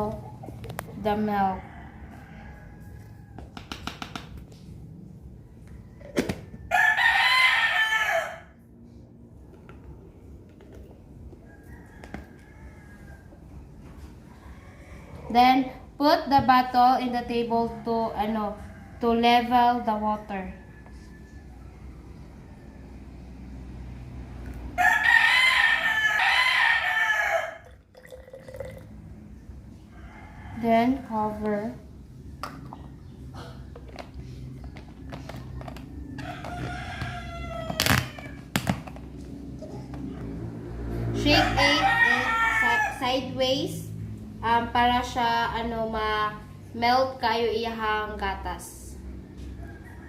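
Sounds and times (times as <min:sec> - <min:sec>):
rooster crowing: 0:01.4 - 0:03.6, 0:05.4 - 0:08.8, 0:11.4 - 0:13.6, 0:20.3 - 0:23.4, 0:24.7 - 0:28.4, 0:29.7 - 0:31.0, 0:35.9 - 0:38.6, 0:40.3 - 0:43.2, 0:49.3 - 0:50.0.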